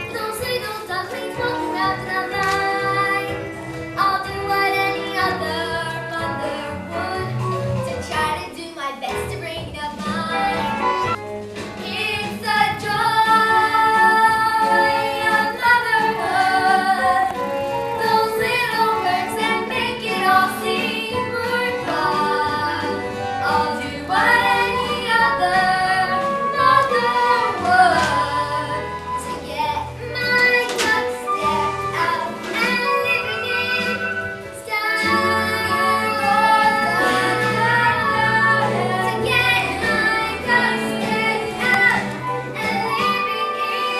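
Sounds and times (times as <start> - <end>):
child singing: 0.0 - 3.4, 18.0 - 43.9
instrumental accompaniment: 0.0 - 43.9.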